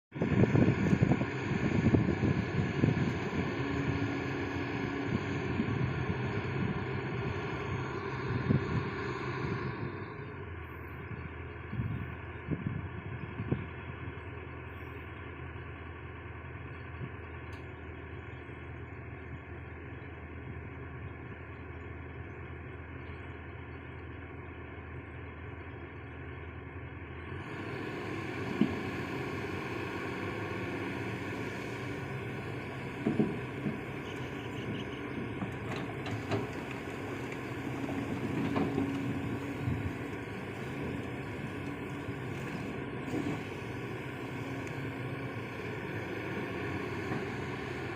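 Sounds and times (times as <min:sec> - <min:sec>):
excavator engine running: 0:00.1 - 0:47.9.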